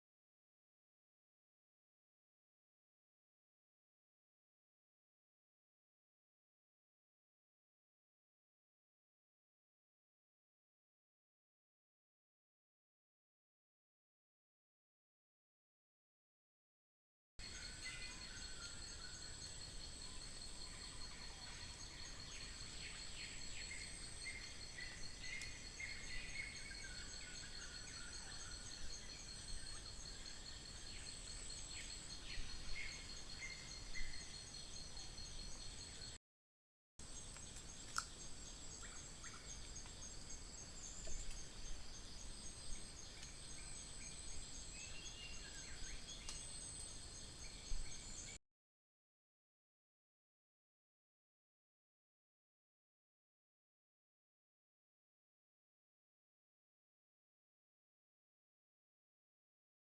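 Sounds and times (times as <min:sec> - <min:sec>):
insect chorus: 0:17.4 - 0:36.2, 0:37.0 - 0:48.4.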